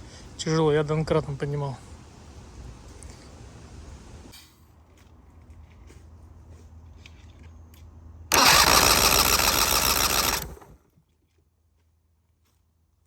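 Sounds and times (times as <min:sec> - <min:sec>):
outboard motor cranking on starter: 0:08.3 - 0:10.9.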